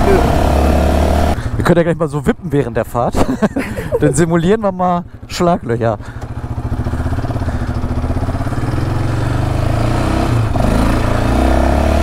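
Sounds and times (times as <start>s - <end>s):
four-stroke engine pulling under throttle: 6.0s - 12.0s.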